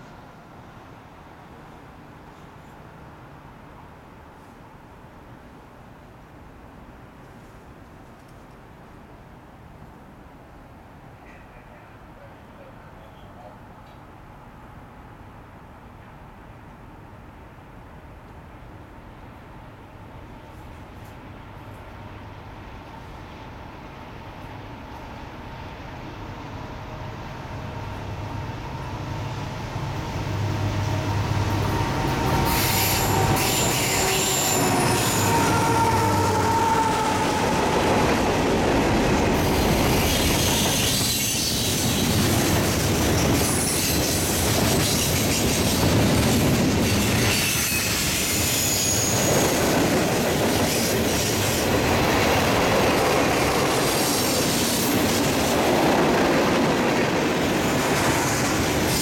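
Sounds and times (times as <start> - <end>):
diesel locomotive engines: 0.0 - 59.0
high-pitched wheel squeal: 31.6 - 37.5, 47.1 - 49.7.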